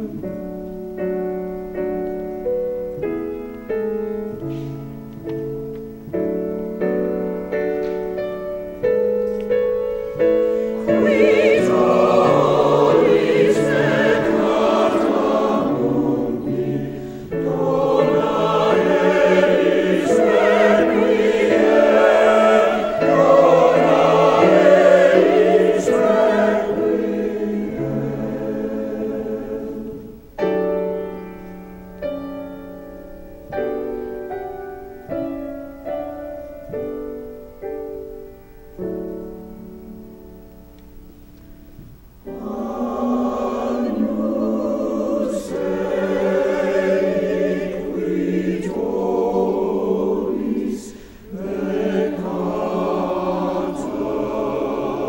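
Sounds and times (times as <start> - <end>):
choir singing: 0.0 - 0.8, 1.6 - 31.7, 41.7 - 55.0
piano accompaniment: 0.0 - 55.0.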